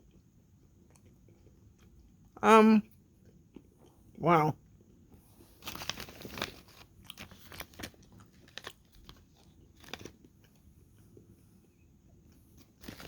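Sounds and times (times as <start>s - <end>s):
person chewing: 0.0s - 4.2s, 6.9s - 11.3s.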